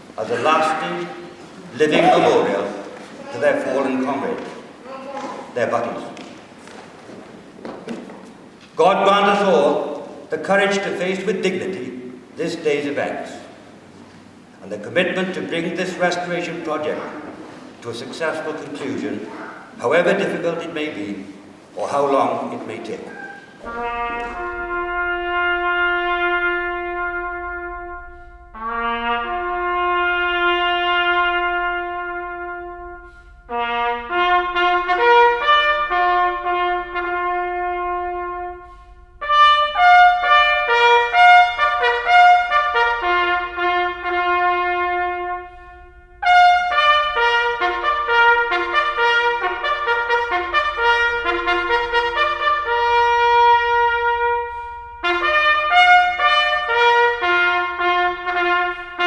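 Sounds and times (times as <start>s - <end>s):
trumpet playing slow melody: 0.0s - 4.8s, 23.1s - 59.0s.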